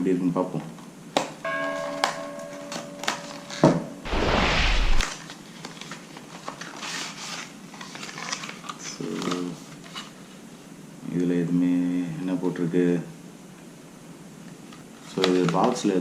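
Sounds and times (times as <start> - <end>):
packaging rustling: 5.6 - 10.2.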